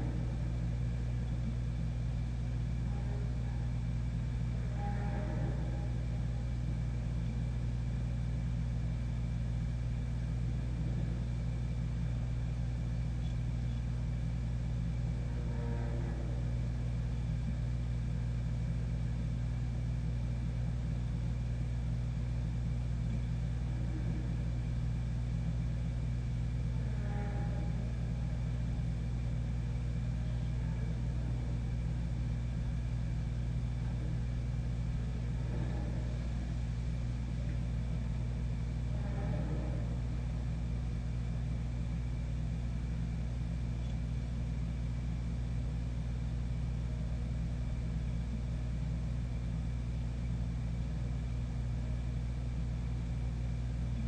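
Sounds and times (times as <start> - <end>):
faint wavering groaning tones: 0.0 - 7.8, 9.8 - 18.9, 22.6 - 42.7.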